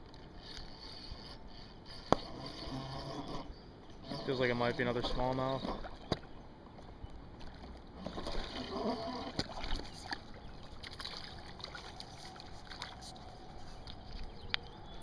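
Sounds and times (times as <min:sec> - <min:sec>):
fishing reel clicks: 0:00.4 - 0:02.9
fish splashing in water: 0:07.5 - 0:14.2.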